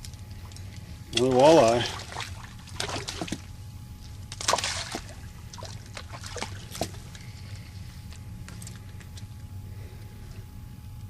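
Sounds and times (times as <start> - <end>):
steady low hum: 0.0 - 11.0
water splashing and sloshing: 1.1 - 3.6, 4.2 - 7.6.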